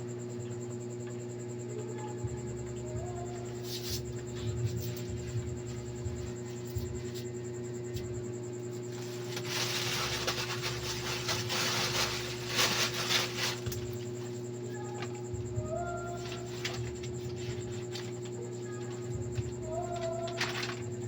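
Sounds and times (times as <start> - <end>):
low electrical hum: 0.0 - 21.0
crackling handling noise: 8.8 - 15.3, 16.1 - 21.0.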